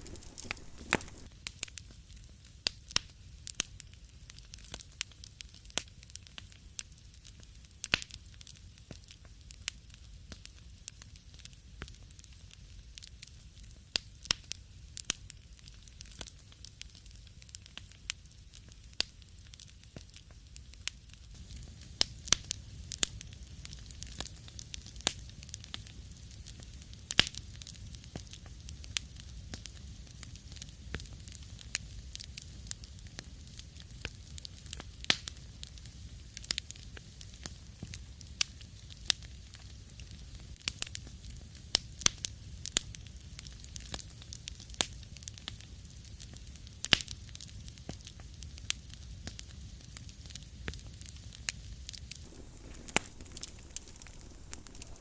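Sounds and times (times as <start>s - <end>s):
sharp pops and snaps: 0.0s - 1.3s, 52.0s - 55.0s
wood fire crackling: 0.0s - 1.9s, 2.9s - 55.0s
low rumble of burning fire: 0.0s - 55.0s.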